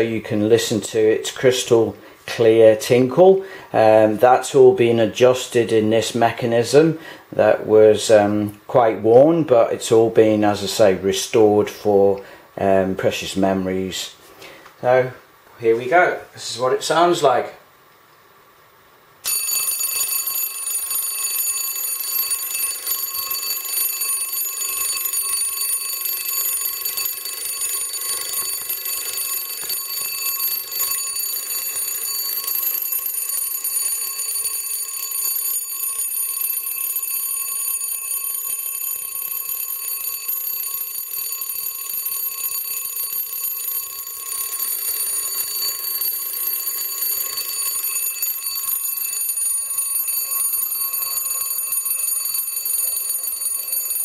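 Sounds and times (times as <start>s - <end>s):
electric doorbell ringing: 19.2s - 54.0s.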